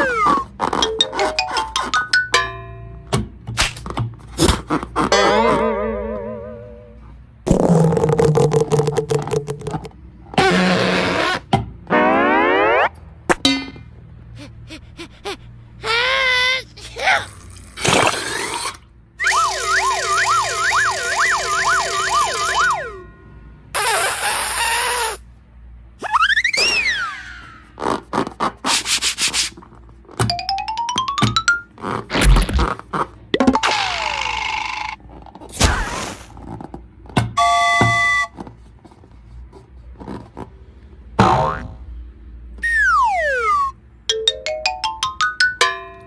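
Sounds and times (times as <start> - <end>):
siren-like whistling tone: 19.2 - 23.1, 37.4 - 38.4, 42.6 - 43.8.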